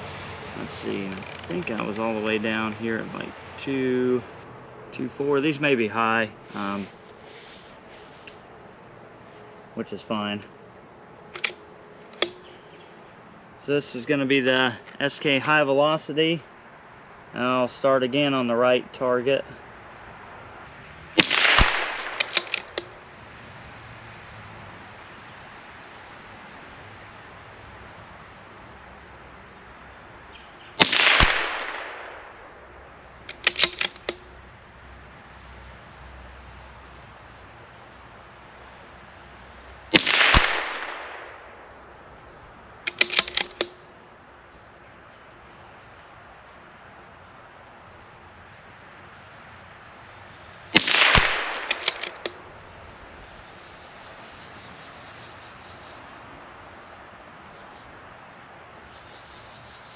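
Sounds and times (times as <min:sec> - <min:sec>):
crickets chirring: 0:00.0 - 0:59.9
rifle bolt metal clicks: 0:11.4 - 0:12.5, 0:21.2 - 0:22.9, 0:33.3 - 0:34.2, 0:42.9 - 0:43.8, 0:50.8 - 0:52.4
rifle shots: 0:21.1 - 0:22.8, 0:30.8 - 0:32.5, 0:33.3 - 0:34.1, 0:39.9 - 0:41.7, 0:42.9 - 0:43.8, 0:50.7 - 0:52.4.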